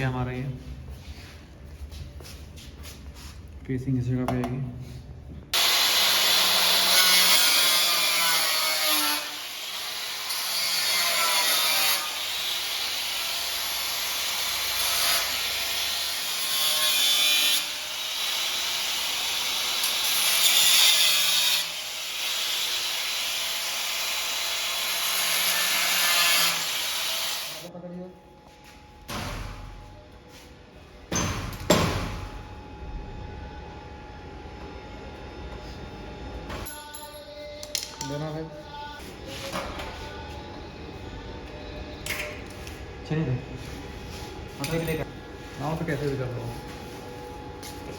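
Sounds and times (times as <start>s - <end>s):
power tool grinding steel: 5.6s - 27.7s.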